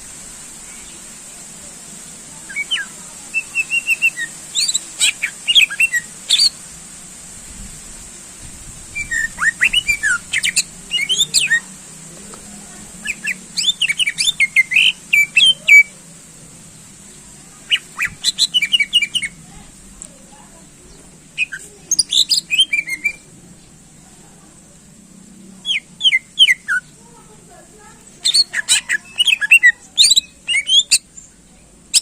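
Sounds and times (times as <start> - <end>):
faint hiss and hum: 0.0 - 32.0
bird singing chirps and whistles: 2.5 - 6.6, 9.0 - 11.7, 13.0 - 15.9, 17.7 - 19.4, 21.4 - 23.2, 25.6 - 26.9, 28.2 - 31.1.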